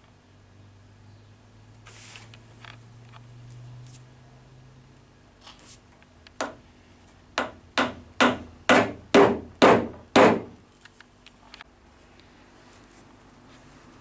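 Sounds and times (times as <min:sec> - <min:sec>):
hammer blows on wooden plug: 0:06.4 - 0:06.6, 0:07.4 - 0:10.6.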